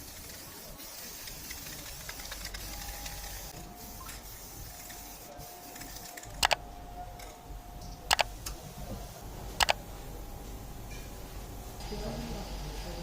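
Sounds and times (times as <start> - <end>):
faint steady hum: 2.3 - 13.0
sharp double clicks: 8.1 - 8.3.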